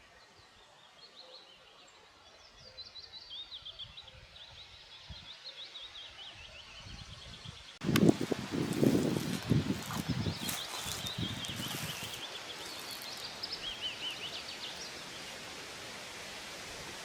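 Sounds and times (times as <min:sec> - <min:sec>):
songbird chirping: 0:00.2 - 0:15.4
rustling and crackling dry leaves: 0:07.8 - 0:15.0.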